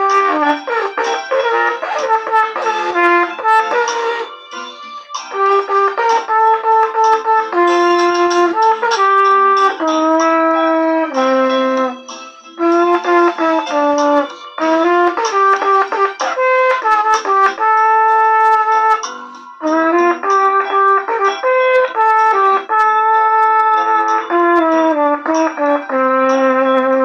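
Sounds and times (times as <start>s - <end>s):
solo trumpet melody: 0.0s - 27.0s.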